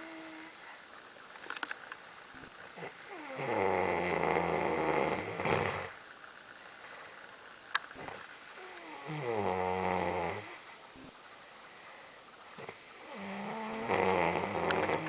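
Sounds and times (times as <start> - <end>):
person snoring: 2.4 - 6.0, 8.0 - 11.1, 12.5 - 15.0.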